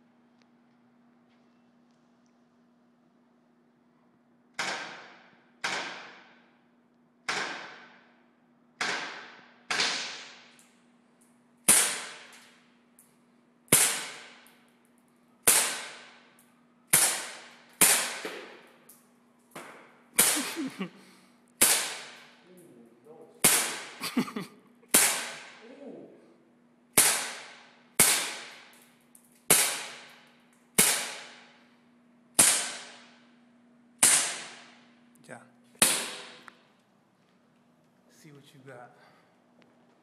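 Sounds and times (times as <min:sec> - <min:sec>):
bb gun shots: 0:08.8 - 0:10.5, 0:11.7 - 0:12.4, 0:13.7 - 0:14.5, 0:15.5 - 0:16.2, 0:16.9 - 0:18.7, 0:21.6 - 0:22.4, 0:23.4 - 0:24.0, 0:24.9 - 0:25.6, 0:26.9 - 0:28.7, 0:29.5 - 0:30.2, 0:30.8 - 0:31.5, 0:32.4 - 0:33.2, 0:34.0 - 0:34.8, 0:35.8 - 0:36.5.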